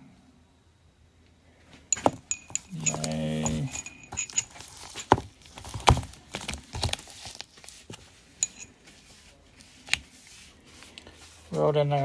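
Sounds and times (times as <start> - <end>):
metal parts clinking: 1.9 - 7.6, 8.4 - 8.8.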